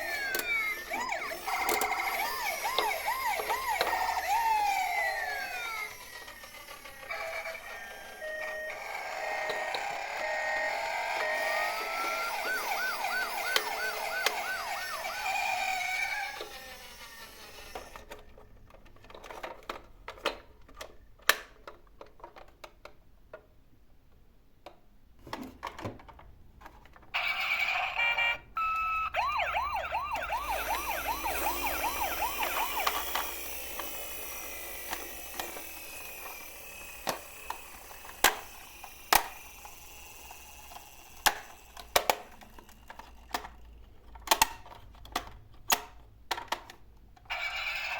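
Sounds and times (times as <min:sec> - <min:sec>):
toy siren warbling: 0:00.0 - 0:18.0, 0:27.2 - 0:43.5, 0:47.3 - 0:47.9
high electronic tone: 0:28.6 - 0:36.5.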